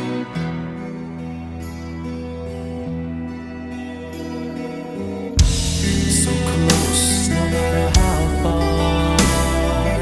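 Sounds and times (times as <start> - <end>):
fuller music with guitar: 0.0 - 10.0
quiet sustained instrumental music: 0.0 - 10.0.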